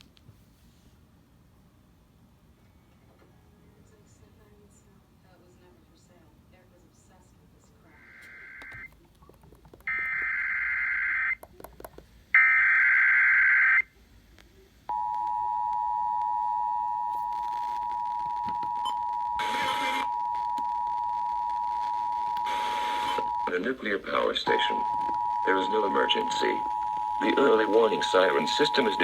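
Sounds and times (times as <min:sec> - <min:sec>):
screeching digital data bursts: 0:24.5 - 0:29.0
two-tone alert signal: 0:24.5 - 0:29.0.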